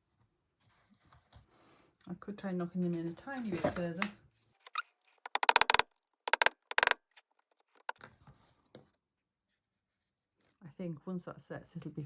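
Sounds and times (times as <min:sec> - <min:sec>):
hammer tapping nails into wood: 0:05.3 - 0:07.0.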